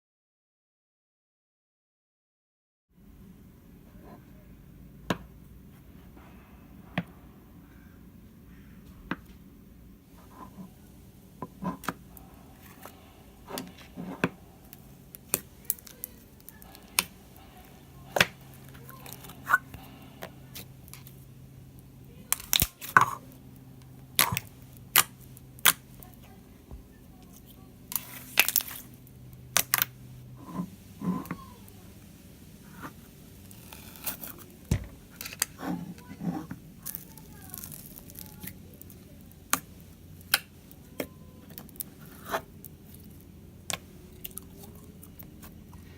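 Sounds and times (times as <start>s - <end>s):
low steady hum: 3.0s - 45.9s.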